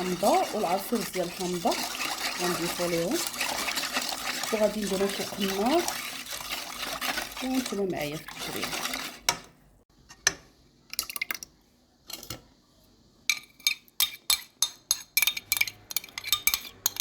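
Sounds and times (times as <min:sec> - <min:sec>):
metal utensil clinking on saucepan: 0:13.3 - 0:17.0.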